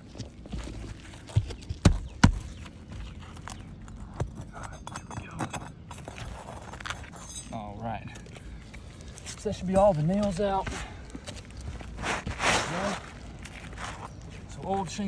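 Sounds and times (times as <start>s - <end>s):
sharp knocks: 1.4s - 2.6s.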